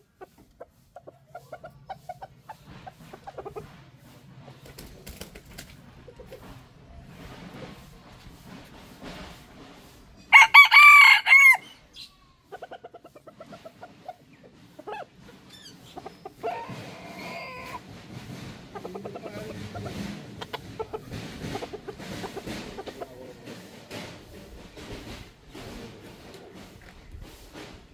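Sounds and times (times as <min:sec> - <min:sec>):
chicken clucking: 0:00.0 - 0:27.9
rooster crowing: 0:10.3 - 0:11.8.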